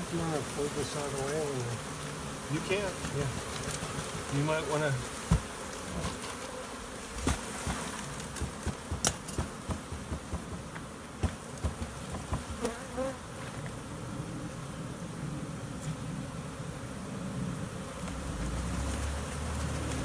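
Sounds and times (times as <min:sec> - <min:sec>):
bee swarm buzzing: 0:00.0 - 0:20.0
handling knocks and thumps: 0:05.2 - 0:06.4, 0:07.2 - 0:12.6.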